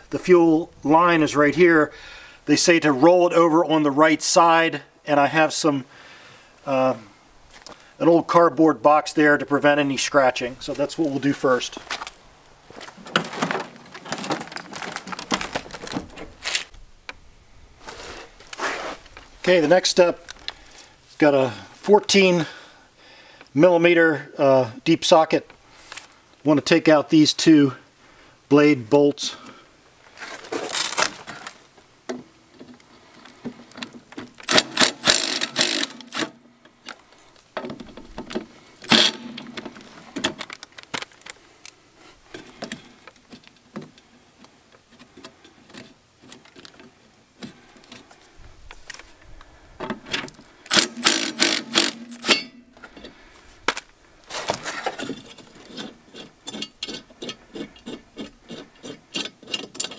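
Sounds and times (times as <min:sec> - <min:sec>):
socket ratchet clicking: 0:34.5 - 0:36.4, 0:50.7 - 0:52.6.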